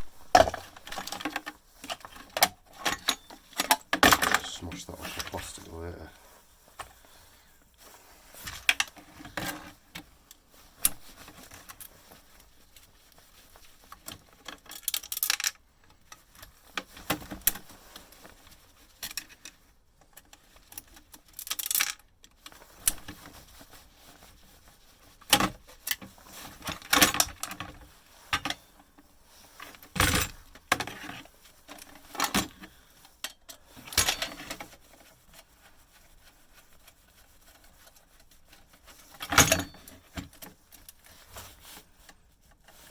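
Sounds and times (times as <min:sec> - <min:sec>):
metal parts and tools clinking: 0:00.0 - 0:05.7, 0:14.4 - 0:15.6, 0:33.2 - 0:34.8, 0:39.1 - 0:40.5.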